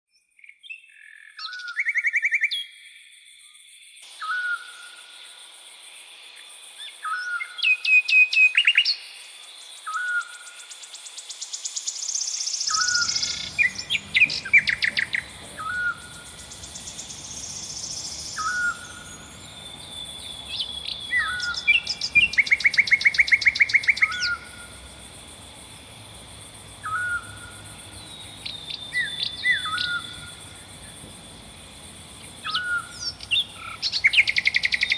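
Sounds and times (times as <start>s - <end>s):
songbirds singing: 12.2s - 34.9s
thin steady high tone: 12.7s - 34.9s.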